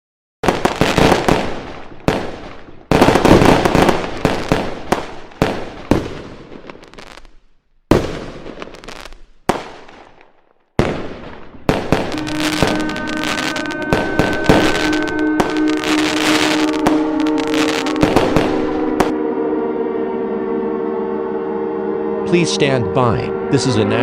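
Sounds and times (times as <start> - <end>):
fireworks bangs: 0.4 - 19.2
fireworks crackling: 0.4 - 19.2.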